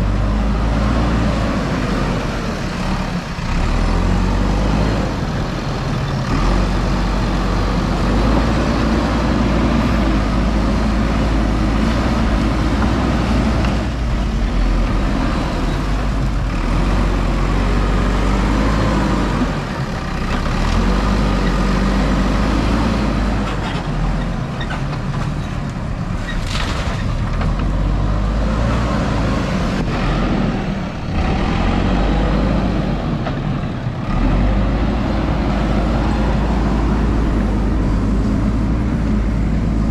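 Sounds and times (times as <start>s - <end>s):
diesel engine running under load: 0.0s - 39.9s.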